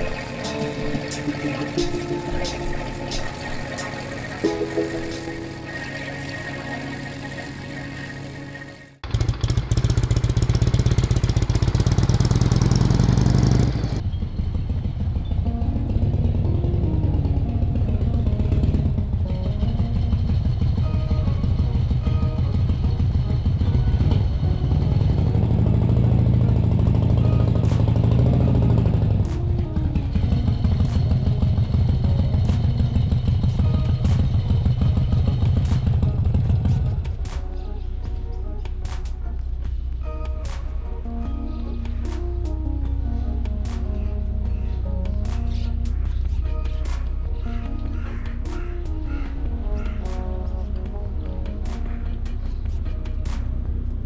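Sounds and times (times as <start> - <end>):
music: 0.0 - 14.1, 15.0 - 54.0
motorcycle engine running: 0.0 - 37.5.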